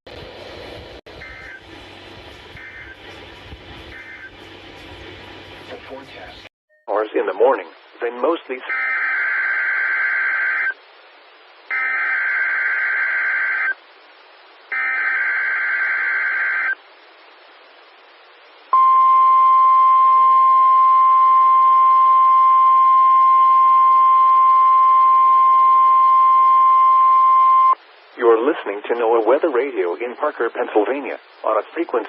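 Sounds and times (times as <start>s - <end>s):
buzzing data squawks: 1.2s - 1.6s, 2.6s - 3.0s, 3.9s - 4.3s, 11.7s - 13.8s, 14.7s - 16.8s
steady warning alarm tone: 1.2s - 1.6s, 2.5s - 3.0s, 3.9s - 4.4s, 11.7s - 13.8s, 14.7s - 16.8s.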